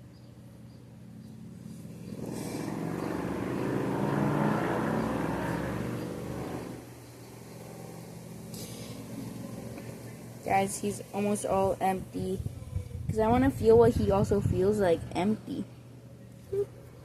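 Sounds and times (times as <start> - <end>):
passing vehicle engine: 1.4 - 11.1.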